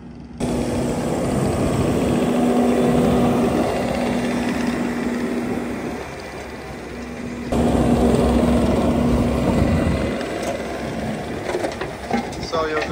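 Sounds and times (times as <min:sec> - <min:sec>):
track loader engine hum: 0:00.0 - 0:12.9.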